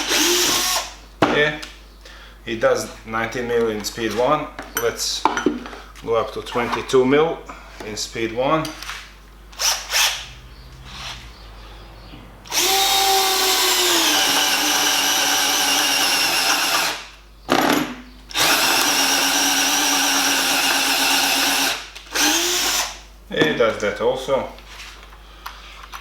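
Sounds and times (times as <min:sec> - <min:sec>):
cordless drill whining into wood: 0:00.0 - 0:01.0, 0:09.6 - 0:10.3, 0:12.5 - 0:17.1, 0:18.3 - 0:23.0.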